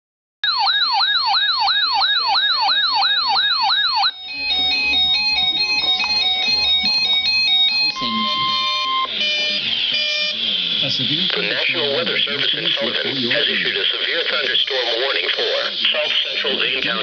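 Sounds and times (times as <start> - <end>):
electronic siren yelp: 0.4 - 12.0
electronic tune of stepping tones: 0.5 - 11.3.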